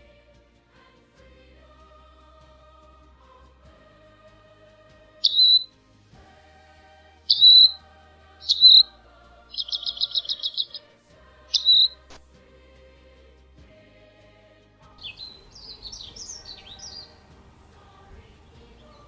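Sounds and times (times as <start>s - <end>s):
faint background music: 0.0s - 19.0s
bird calls sliding downward: 5.2s - 5.6s, 7.3s - 7.8s, 8.4s - 8.8s, 9.6s - 10.8s, 11.5s - 12.0s
bird trill: 5.2s - 5.7s, 7.3s - 7.8s, 8.4s - 8.9s, 9.5s - 10.8s, 11.5s - 12.0s, 15.0s - 19.0s.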